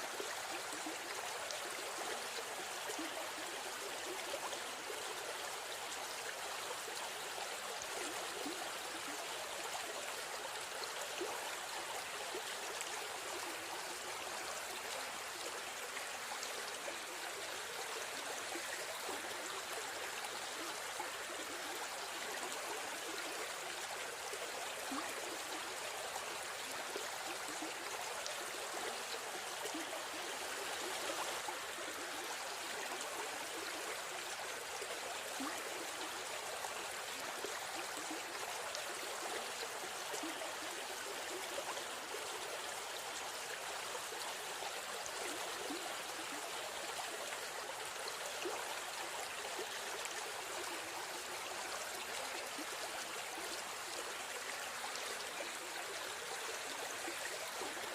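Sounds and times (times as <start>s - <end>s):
river stream flowing: 0.0s - 57.9s.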